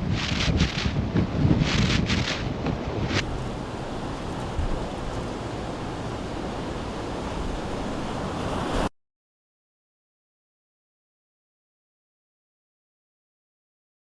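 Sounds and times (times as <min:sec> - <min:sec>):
wind blowing across microphone: 0:00.0 - 0:08.9.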